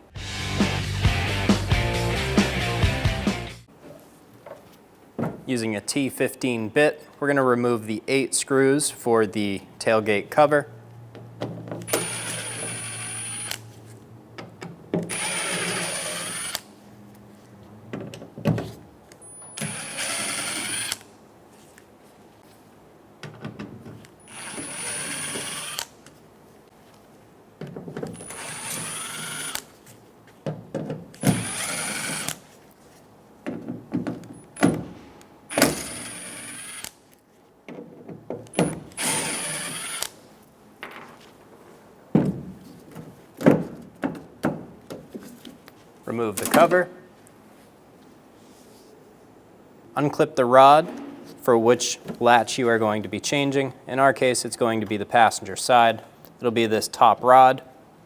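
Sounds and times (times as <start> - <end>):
cordless drill driving screws: 11.9 - 13.6, 15.1 - 16.7, 19.5 - 21.1, 24.2 - 26.0, 28.2 - 29.7, 31.2 - 32.4, 35.5 - 37.0, 38.6 - 40.2.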